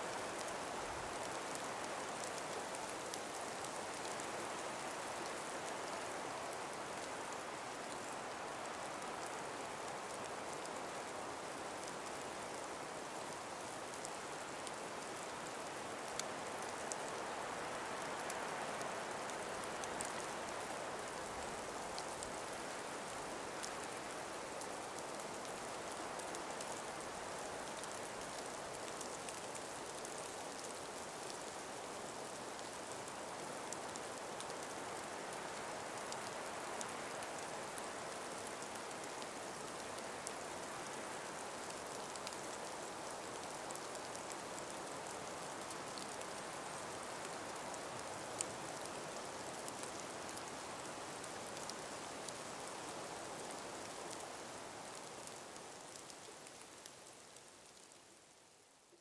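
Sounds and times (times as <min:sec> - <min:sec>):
breeze through trees: 0:00.0 - 0:59.0
faint ticks: 0:32.6 - 0:57.9.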